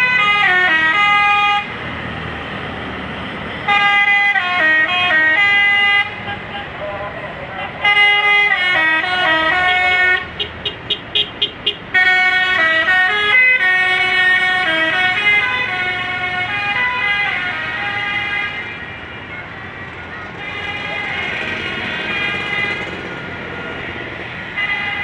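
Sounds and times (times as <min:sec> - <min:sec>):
musical bus air horn: 0:03.7 - 0:19.1, 0:20.3 - 0:23.6, 0:24.5 - 0:25.0.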